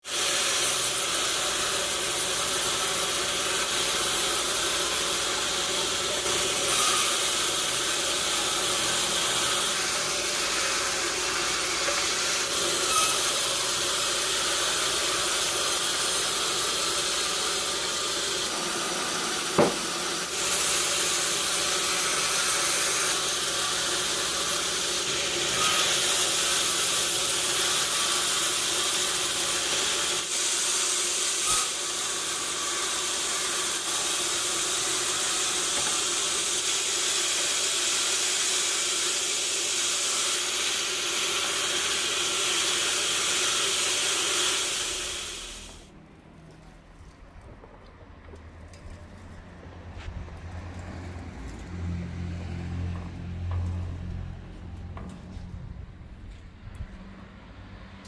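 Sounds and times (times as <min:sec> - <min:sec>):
saw cutting timber: 0:00.0 - 0:46.0
sharp knock: 0:19.6 - 0:19.9.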